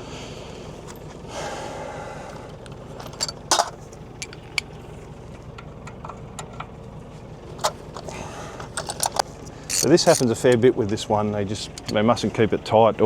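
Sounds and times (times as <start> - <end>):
low engine hum: 0.0 - 13.0
tool clinking on metal: 3.0 - 4.7, 7.6 - 10.6, 11.8 - 12.0.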